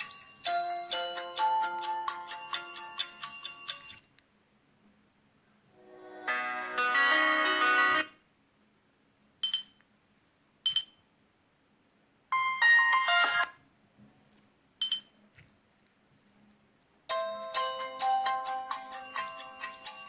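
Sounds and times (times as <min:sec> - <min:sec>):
chiming ringtone melody: 0:00.0 - 0:04.1, 0:06.0 - 0:08.1, 0:12.3 - 0:13.5, 0:17.1 - 0:20.0.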